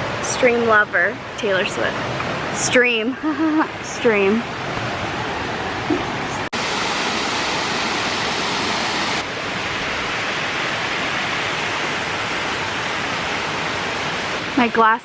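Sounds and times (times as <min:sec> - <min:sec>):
rushing falling water: 0:00.0 - 0:15.0.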